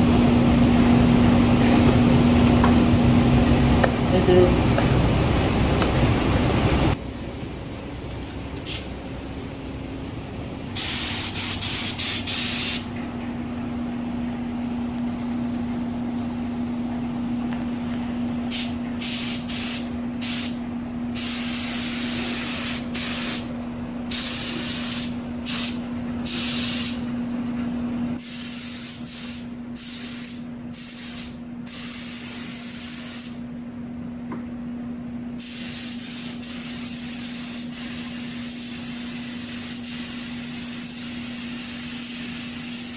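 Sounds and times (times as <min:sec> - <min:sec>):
steady low hum: 0:00.0 - 0:42.9
spray gun air hissing: 0:10.7 - 0:12.9, 0:18.4 - 0:20.6, 0:21.2 - 0:23.5, 0:24.1 - 0:27.1, 0:28.2 - 0:33.5, 0:35.3 - 0:42.9.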